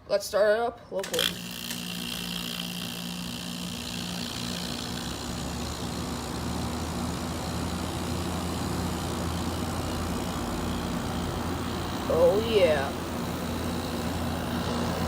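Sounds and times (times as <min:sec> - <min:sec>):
air conditioner fan whoosh: 0:05.2 - 0:15.0.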